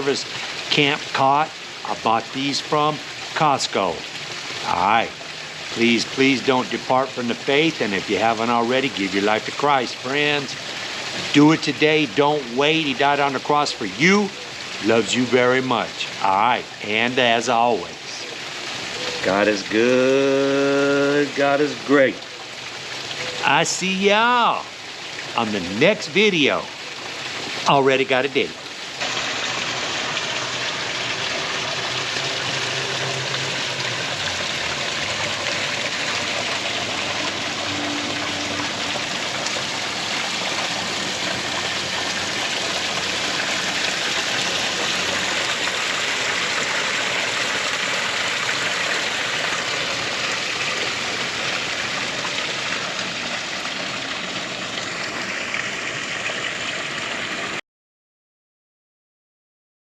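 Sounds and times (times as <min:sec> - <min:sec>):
rushing water: 0:00.0 - 0:57.6.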